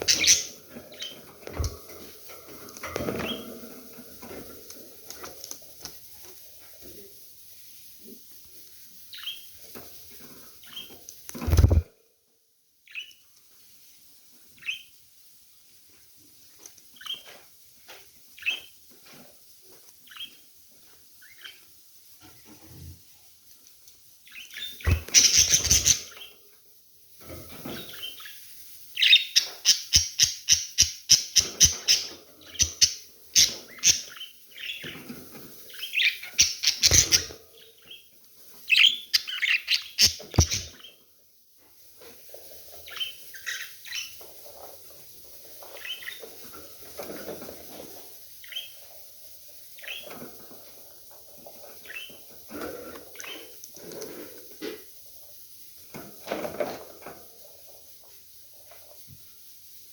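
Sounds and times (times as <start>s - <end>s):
budgerigars chirping and chattering: 0.0s - 2.0s, 3.0s - 3.5s, 9.1s - 9.5s, 10.6s - 11.8s, 18.4s - 18.8s, 20.1s - 20.4s, 24.3s - 26.4s, 29.0s - 38.1s, 38.7s - 41.0s, 42.8s - 44.2s, 45.6s - 46.3s, 48.4s - 48.8s, 49.8s - 50.2s, 51.6s - 52.3s, 53.1s - 53.6s.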